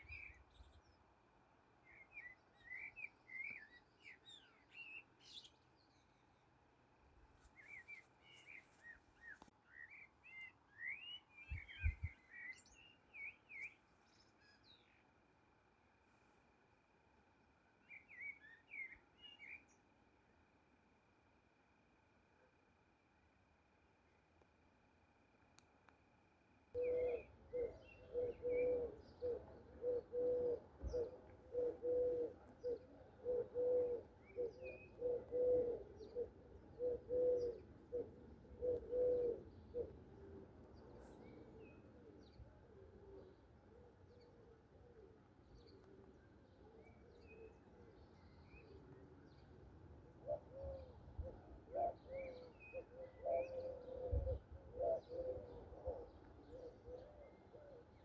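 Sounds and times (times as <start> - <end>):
songbirds chirping: 0.0 - 58.0
dove cooing: 26.8 - 49.1, 50.1 - 58.0.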